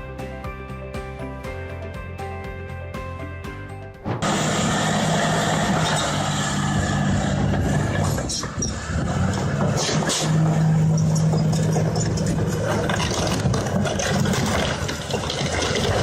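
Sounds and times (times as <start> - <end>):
heavy machine engine humming: 4.2 - 16.0
mechanical knocks and clanks: 7.4 - 16.0.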